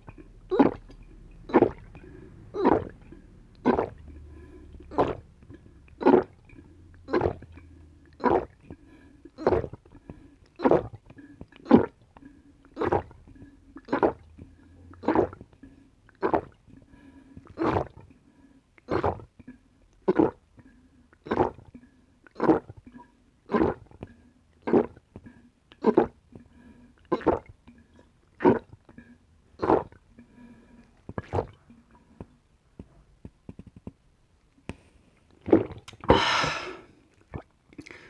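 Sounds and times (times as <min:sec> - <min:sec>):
person gulping: 0:00.0 - 0:14.4, 0:28.4 - 0:30.0, 0:35.4 - 0:38.0.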